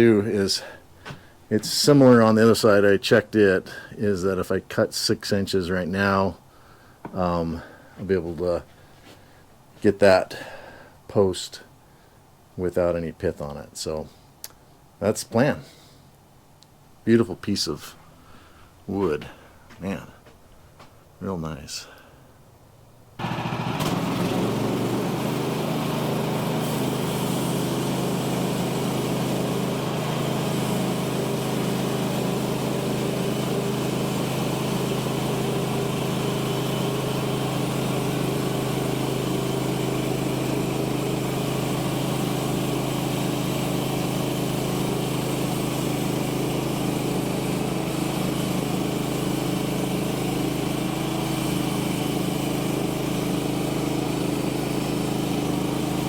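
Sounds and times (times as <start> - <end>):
sawmill engine and blade cutting: 23.2 - 56.0.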